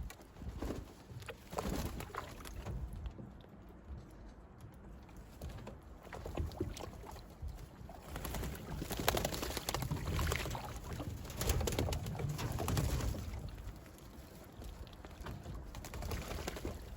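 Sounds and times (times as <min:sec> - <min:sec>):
birds splashing in water: 0:00.8 - 0:02.8, 0:05.9 - 0:16.9.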